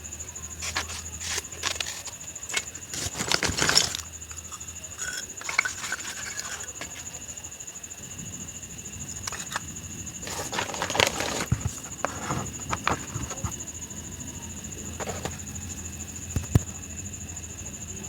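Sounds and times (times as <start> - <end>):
crisp crunching and nibbling: 0.6 - 7.2, 9.2 - 13.6.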